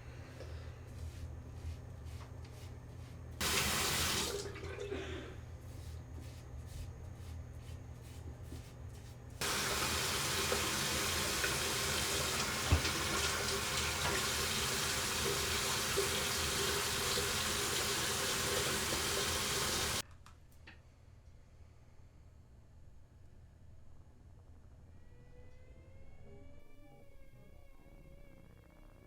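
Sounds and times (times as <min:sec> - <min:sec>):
water running: 0:03.4 - 0:05.4, 0:09.4 - 0:20.0.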